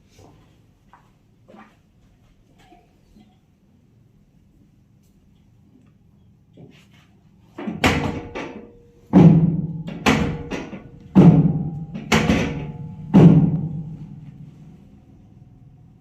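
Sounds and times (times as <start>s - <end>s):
loud hollow thumps: 7.6s - 14.6s.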